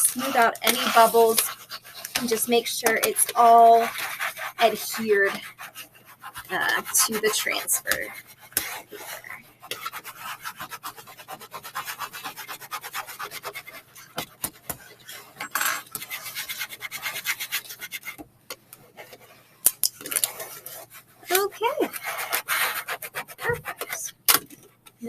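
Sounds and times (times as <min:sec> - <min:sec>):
edge scraping over tape: 0:19.0 - 0:24.2.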